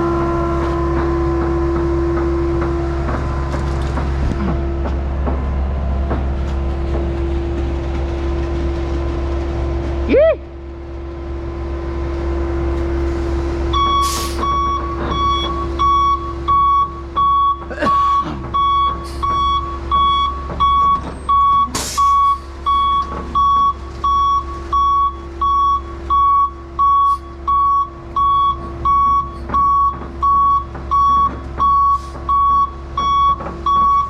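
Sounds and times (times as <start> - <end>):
heavy engine running: 0.0 - 34.0
backup alarm beeping: 13.7 - 34.0.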